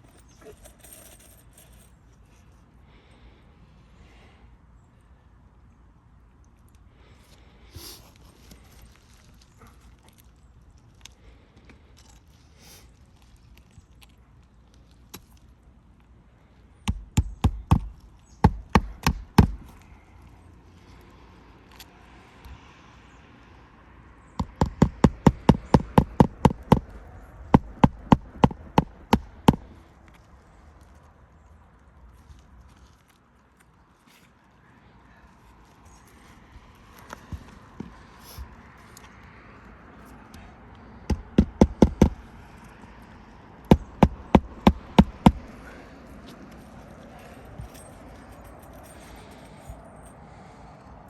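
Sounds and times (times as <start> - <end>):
hammer driving nails into shingles: 16.8 - 19.8, 24.4 - 29.8, 41.1 - 42.3, 43.6 - 45.7.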